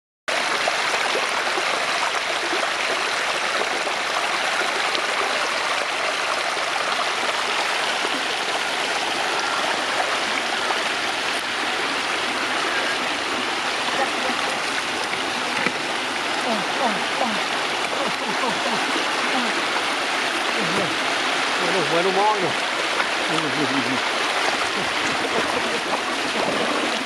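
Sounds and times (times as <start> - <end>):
floodwater rushing: 0.3 - 27.0.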